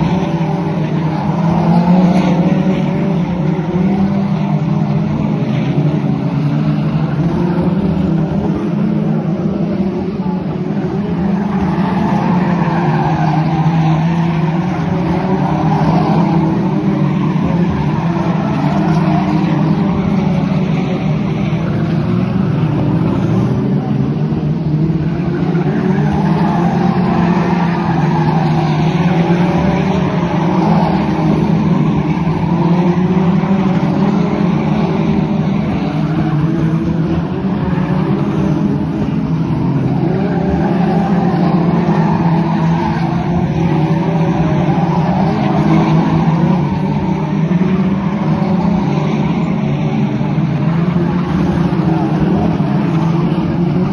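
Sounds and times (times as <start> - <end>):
racing car engine running hard: 0.0 - 53.9
tyres sliding on track: 0.0 - 53.9.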